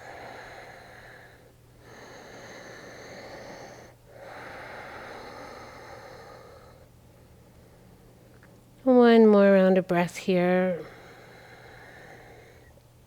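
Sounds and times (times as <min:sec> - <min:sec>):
woman breathing deeply: 0:00.0 - 0:08.4, 0:10.8 - 0:12.8.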